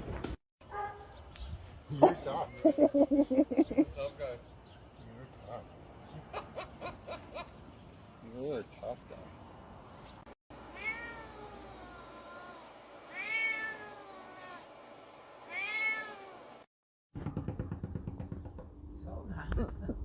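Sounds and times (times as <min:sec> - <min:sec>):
cat meowing: 0:10.7 - 0:14.7, 0:15.5 - 0:16.4.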